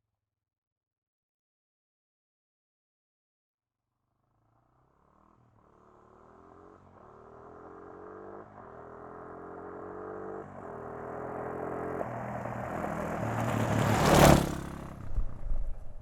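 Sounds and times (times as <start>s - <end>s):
quad bike engine accelerating: 4.4s - 16.0s.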